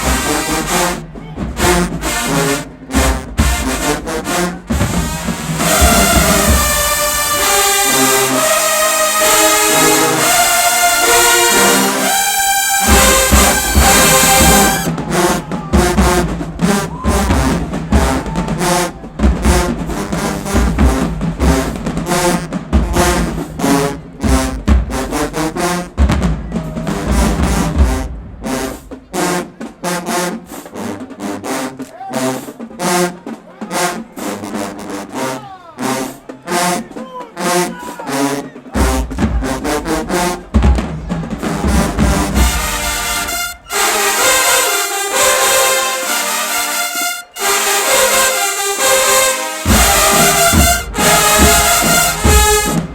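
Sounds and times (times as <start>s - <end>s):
snare drum rolls: 0.0s - 35.6s, 36.3s - 52.9s
brass chords: 0.0s - 52.9s
bass drum strikes: 4.7s - 7.4s, 38.8s - 43.6s.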